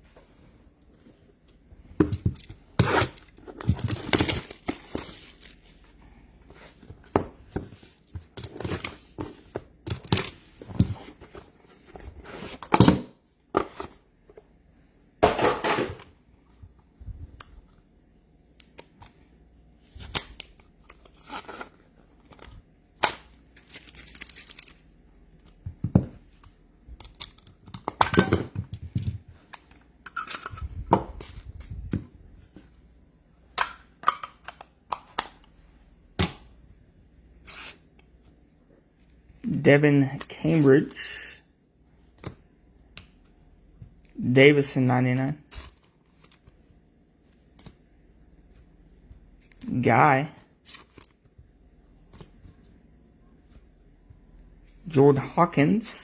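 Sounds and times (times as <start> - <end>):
wrapper crinkling: 3.9 - 5.9, 23.4 - 24.9
wrappers tearing: 23.6 - 24.8.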